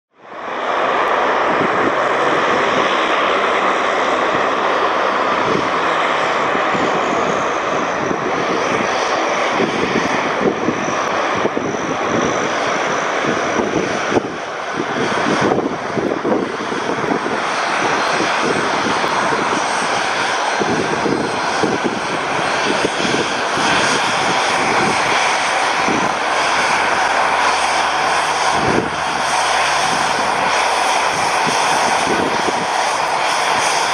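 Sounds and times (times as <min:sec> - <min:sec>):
jet engines roaring with whine: 0:00.1 - 0:33.9.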